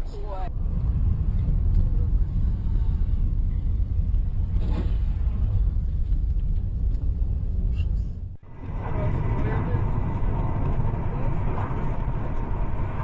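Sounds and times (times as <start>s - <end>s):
car driving rumble: 0.0s - 13.0s.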